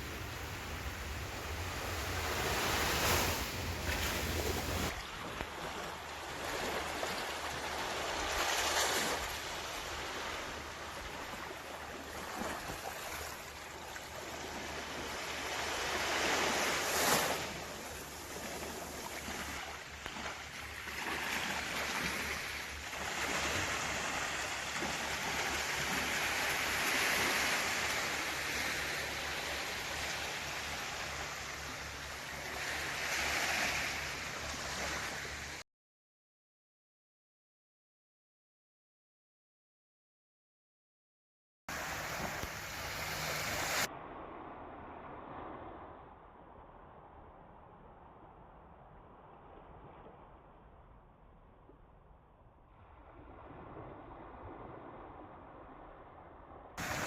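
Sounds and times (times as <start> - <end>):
ocean waves breaking on shore: 0.0 - 35.6, 41.7 - 50.8, 52.7 - 57.0.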